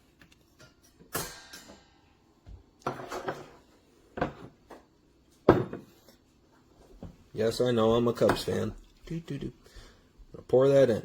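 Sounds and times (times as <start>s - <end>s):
kitchen items set down on countertop: 2.5s - 3.6s, 4.2s - 6.2s.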